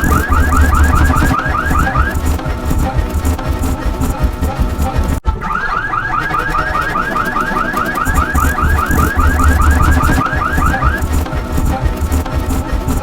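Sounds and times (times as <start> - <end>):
rising electronic chirps: 0.0 - 4.4, 5.3 - 12.4
heavy bass rumble: 0.0 - 5.2, 8.1 - 13.0.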